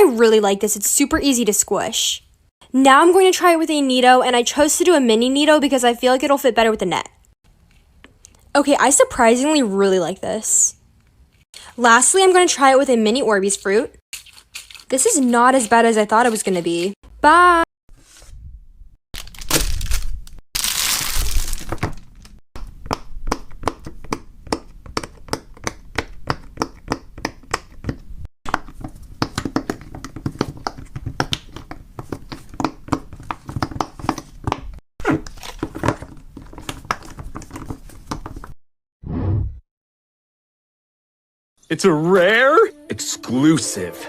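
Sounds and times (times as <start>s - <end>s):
crinkling: 19.2s - 22.4s.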